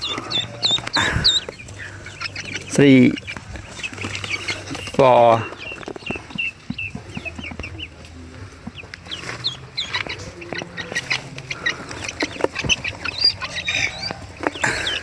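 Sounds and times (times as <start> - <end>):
ducklings peeping: 0.0 - 15.0.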